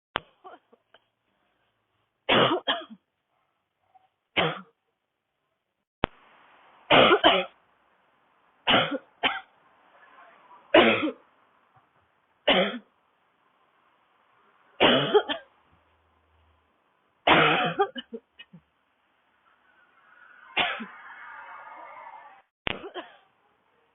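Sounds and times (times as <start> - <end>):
woman coughing: 2.3 - 3.0, 10.8 - 11.2, 12.5 - 12.8, 14.8 - 15.5, 17.3 - 18.2, 22.7 - 23.3.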